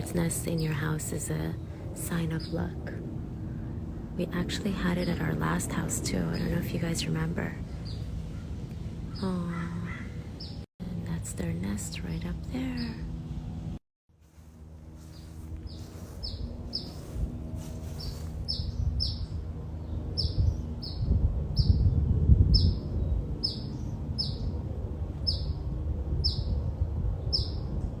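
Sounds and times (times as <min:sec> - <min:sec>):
low rumble: 0:01.2 - 0:28.0
small birds chirping: 0:06.2 - 0:10.7, 0:14.4 - 0:24.6, 0:25.2 - 0:25.6, 0:27.2 - 0:27.7.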